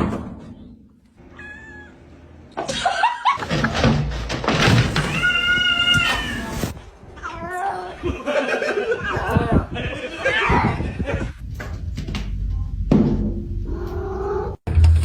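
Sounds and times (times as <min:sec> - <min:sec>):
cat meowing: 0:01.3 - 0:02.0, 0:04.9 - 0:06.8.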